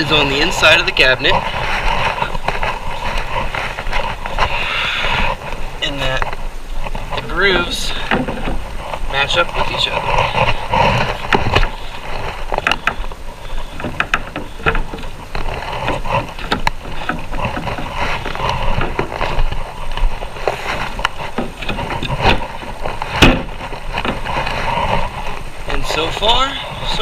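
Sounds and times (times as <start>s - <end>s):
wooden panels knocking and tapping: 13.8s - 15.2s, 23.2s - 24.2s.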